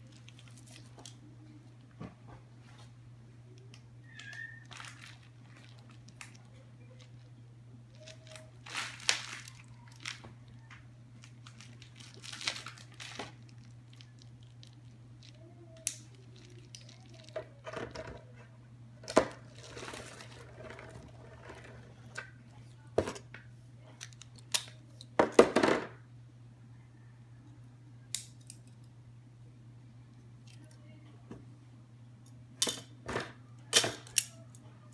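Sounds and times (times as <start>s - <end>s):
low steady hum: 0.0s - 34.9s
packaging crinkling: 3.6s - 7.3s, 7.9s - 17.4s, 19.4s - 21.1s.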